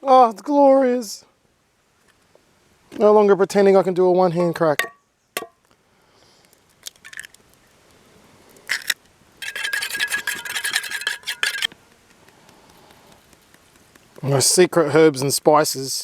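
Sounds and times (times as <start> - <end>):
spice grinder grinding: 8.7 - 11.7.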